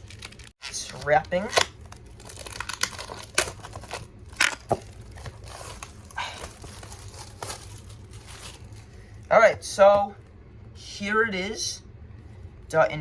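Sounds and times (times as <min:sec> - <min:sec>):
plastic wrap tearing and crinkling: 0:00.0 - 0:09.3.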